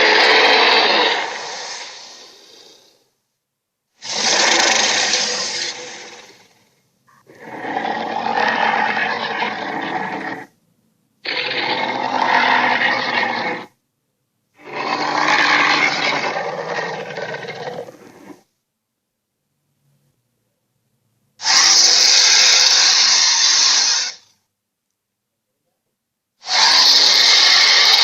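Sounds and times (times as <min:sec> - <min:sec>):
dinosaur roars: 0:00.0 - 0:03.0, 0:04.0 - 0:06.6, 0:07.2 - 0:10.5, 0:11.2 - 0:13.8, 0:14.6 - 0:18.5, 0:26.4 - 0:28.0.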